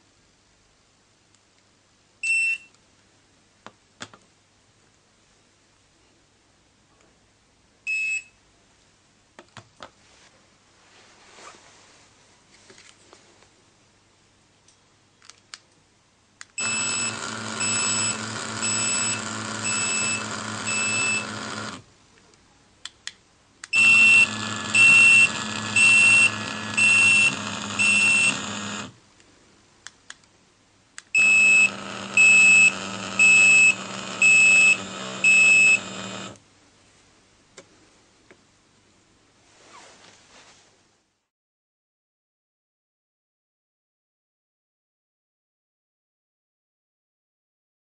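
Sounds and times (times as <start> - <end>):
high beeps: 16.6 - 21.4, 23.8 - 28.4, 31.2 - 36.0
vibration motor buzz: 16.6 - 21.8, 23.8 - 29.0, 31.2 - 36.4.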